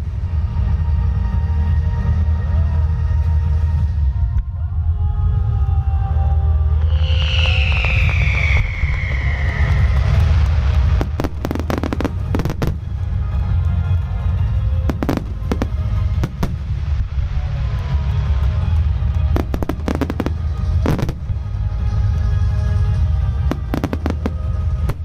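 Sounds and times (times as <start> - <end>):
show music: 0.0 - 25.0
low rumble of shell bursts: 6.7 - 14.0
fireworks bangs and crackling: 6.7 - 25.0.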